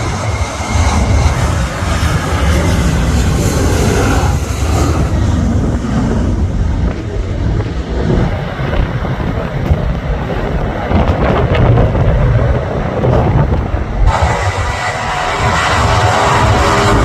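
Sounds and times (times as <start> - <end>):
airliner engines rumbling: 0.0 - 17.0
gusty wind buffeting microphone: 0.0 - 17.0.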